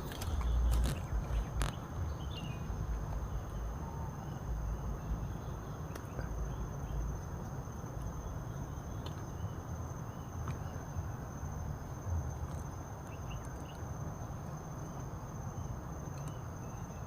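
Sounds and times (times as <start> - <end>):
small ticks: 0.0 - 3.6, 5.8 - 9.5, 12.2 - 14.2, 16.0 - 16.9
faint bird chirps: 0.2 - 7.6.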